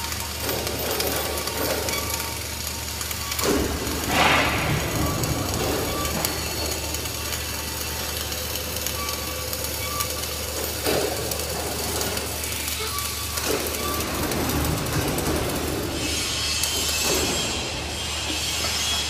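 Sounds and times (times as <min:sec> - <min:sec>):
low machine hum: 0:00.0 - 0:18.4
loud rushing burst: 0:04.0 - 0:06.1.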